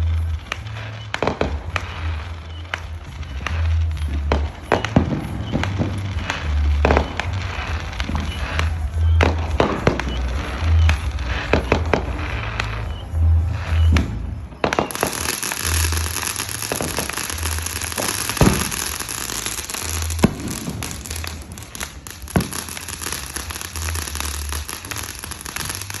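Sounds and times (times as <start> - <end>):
fireworks crackling hiss: 0.0 - 26.0
fireworks sharp bangs: 0.0 - 26.0
pulsing bass music: 0.0 - 26.0.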